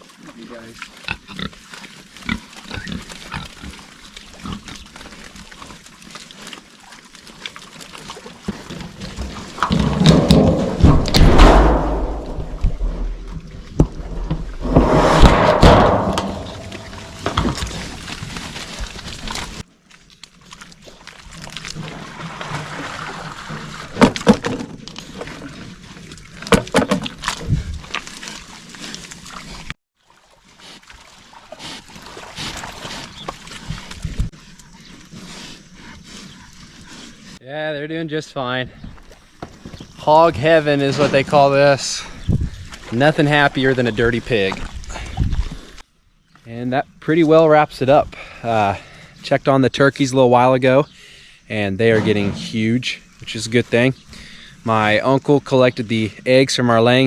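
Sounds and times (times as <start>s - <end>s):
pigs grunting: 0.2s - 13.3s.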